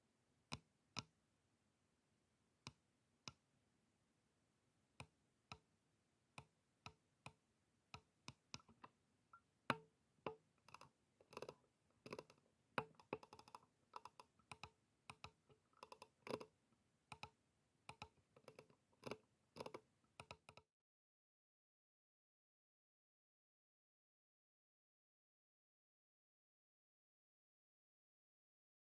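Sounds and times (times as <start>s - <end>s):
computer mouse clicking: 10.6s - 16.5s, 17.1s - 17.3s, 17.9s - 20.6s.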